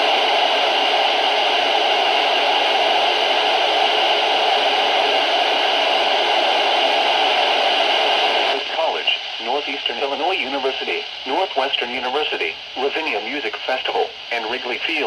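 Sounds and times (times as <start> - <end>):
loud radio static: 5.6 - 15.0.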